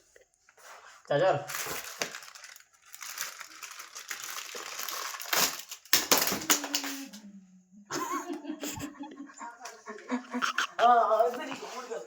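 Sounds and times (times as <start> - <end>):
packaging crinkling and tearing: 1.4 - 7.1.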